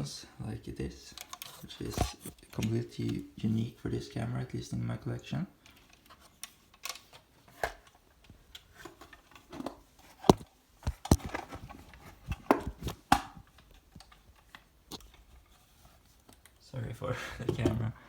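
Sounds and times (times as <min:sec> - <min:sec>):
camera clicks and knocks: 0:10.3 - 0:11.6.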